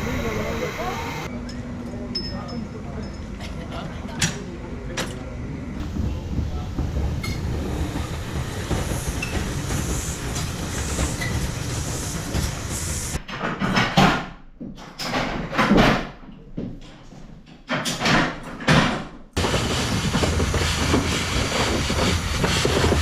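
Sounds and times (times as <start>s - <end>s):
train rumbling along track: 0.0s - 1.3s, 2.7s - 13.2s, 19.4s - 23.0s.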